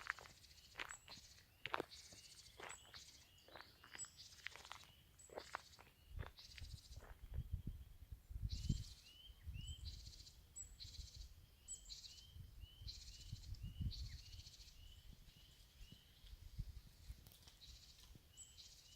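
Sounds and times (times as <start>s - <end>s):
songbird singing: 0.0s - 18.9s
wind on microphone: 6.0s - 10.2s, 12.1s - 17.4s.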